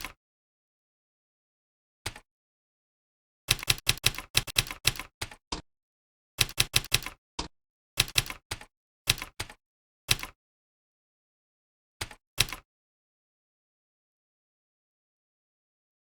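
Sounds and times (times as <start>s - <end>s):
computer keyboard typing: 3.5s - 5.4s, 6.4s - 10.4s, 12.0s - 12.6s.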